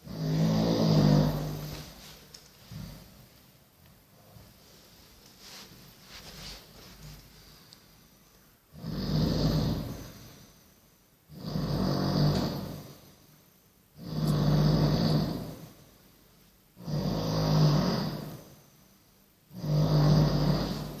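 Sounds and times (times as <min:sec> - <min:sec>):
man snoring loudly: 0:00.0 - 0:01.8, 0:08.7 - 0:10.1, 0:11.3 - 0:13.0, 0:14.0 - 0:15.8, 0:16.8 - 0:18.5, 0:19.5 - 0:21.0.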